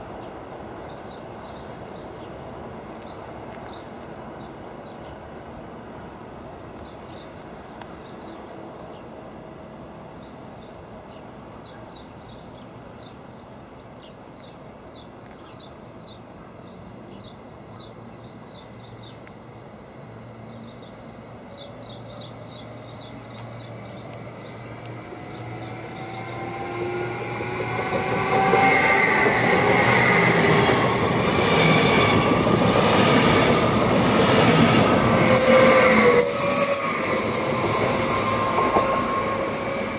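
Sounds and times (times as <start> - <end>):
rail noise: 0.0 - 39.9
train passing: 16.7 - 39.9
squealing train wheels: 21.4 - 39.9.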